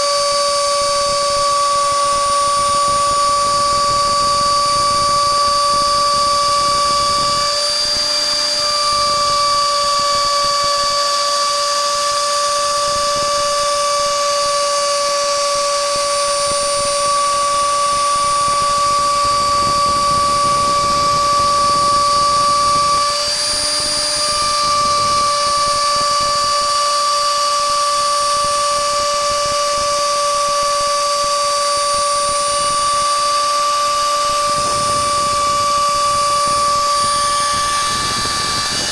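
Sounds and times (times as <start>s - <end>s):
router spindle whining: 0.0s - 38.9s.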